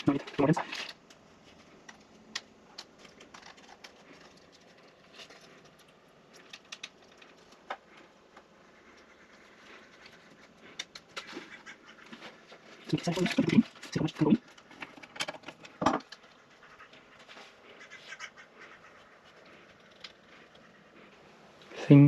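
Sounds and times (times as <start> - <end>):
plastic rustling: 0.0 - 16.3.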